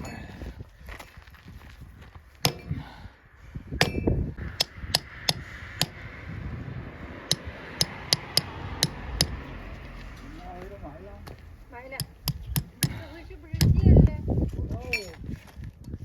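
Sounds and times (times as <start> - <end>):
hammer striking metal: 2.4 - 2.8, 3.8 - 6.1, 7.3 - 9.6, 11.3 - 13.0.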